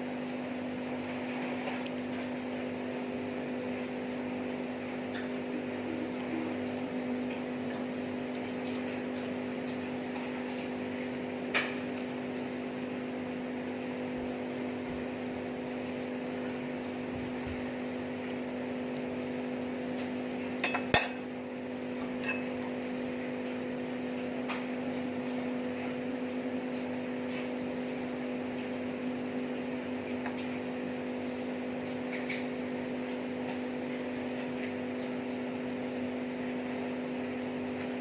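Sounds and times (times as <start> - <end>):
steady electrical hum: 10.1 - 34.3
tableware clinking: 20.6 - 21.3, 22.2 - 22.5.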